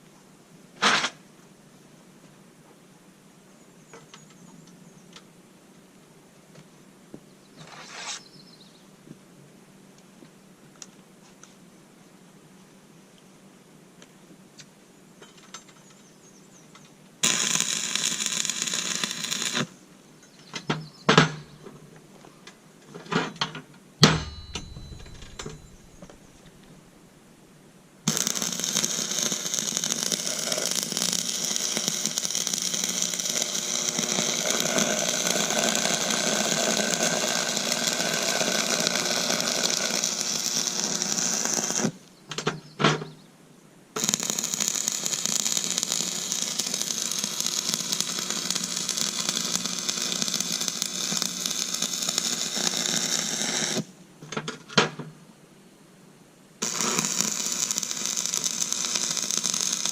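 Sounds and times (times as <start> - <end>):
power tool on steel: 17.2 - 19.7, 28.1 - 41.9, 44.0 - 53.9, 56.6 - 59.9.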